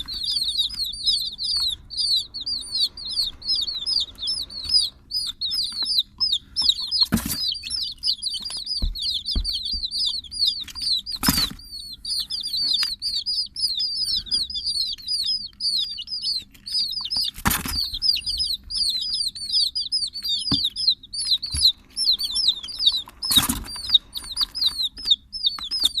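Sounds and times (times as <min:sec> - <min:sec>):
chicks peeping: 0:00.0 - 0:26.0.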